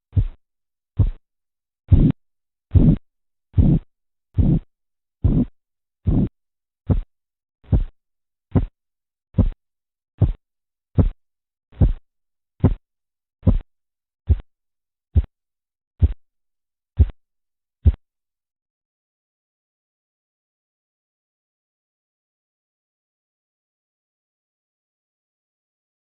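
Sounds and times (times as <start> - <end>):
heartbeat thuds through stethoscope: 0.1 - 0.4, 1.0 - 1.2, 1.9 - 3.0, 3.6 - 8.8, 9.4 - 9.6, 10.2 - 10.4, 11.0 - 11.2, 11.8 - 12.0, 12.6 - 12.8, 13.4 - 13.7, 14.3 - 14.5, 15.2 - 15.4, 16.0 - 16.2, 17.0 - 17.2, 17.8 - 18.0.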